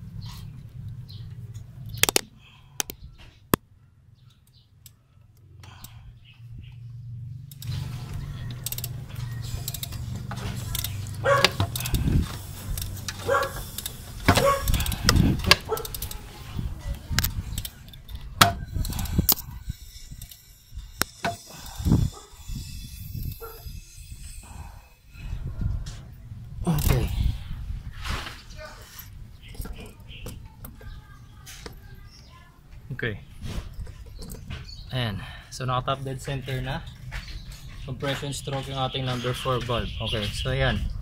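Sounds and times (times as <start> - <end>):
sharp clicks: 1.9 - 3.6
metal tools clinking on engine: 17.3 - 25.1.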